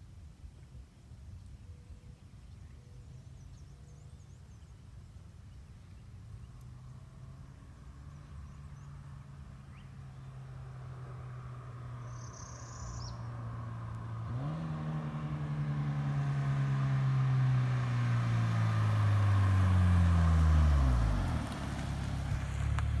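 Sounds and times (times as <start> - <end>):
car exhaust driving off: 13.4 - 23.0.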